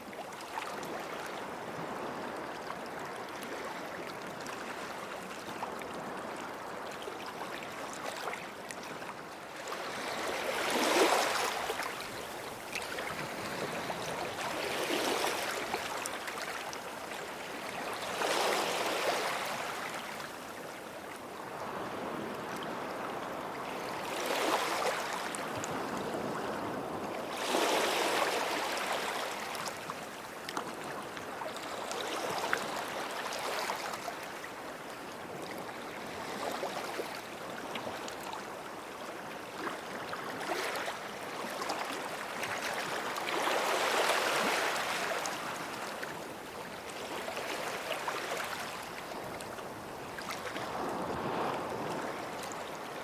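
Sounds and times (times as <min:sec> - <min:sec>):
small waves washing onto beach: 0:00.0 - 0:53.0
surf washing: 0:21.6 - 0:30.0, 0:41.9 - 0:53.0.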